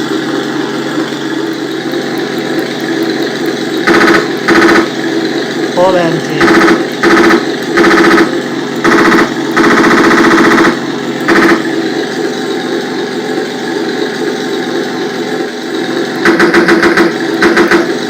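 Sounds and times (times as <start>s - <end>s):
idling engine sound: 0.0s - 18.0s
machine gun bursts effect: 3.8s - 12.0s, 16.1s - 18.0s.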